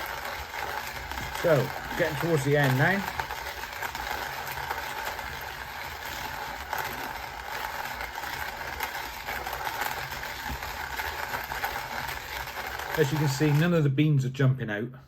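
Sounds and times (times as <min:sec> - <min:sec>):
coffee grinder crunching beans: 0:00.0 - 0:14.0.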